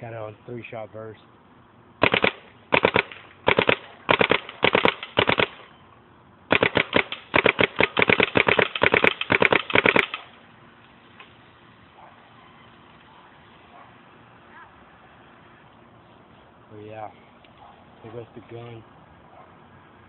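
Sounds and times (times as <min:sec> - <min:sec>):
paintball marker firing pops: 0:06.5 - 0:10.3.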